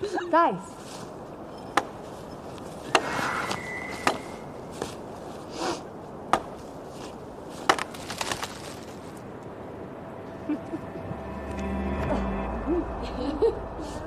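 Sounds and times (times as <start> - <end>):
soft rustling: 0.4 - 9.3.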